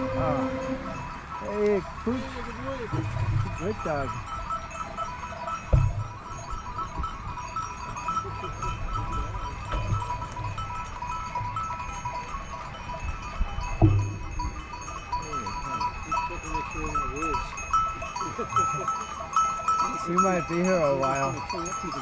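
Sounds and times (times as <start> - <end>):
sheep bleating: 0.0 - 1.1
sheep bells clanking: 0.0 - 22.0
thump: 5.7 - 6.1, 13.8 - 14.2.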